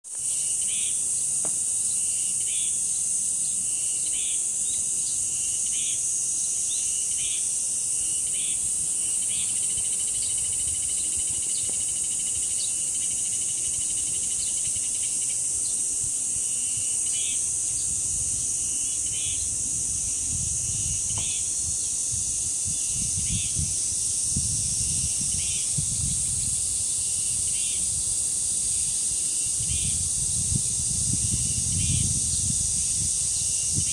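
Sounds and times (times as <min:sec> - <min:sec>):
cicadas droning: 0:00.1 - 0:33.9
wind on microphone: 0:17.5 - 0:33.9.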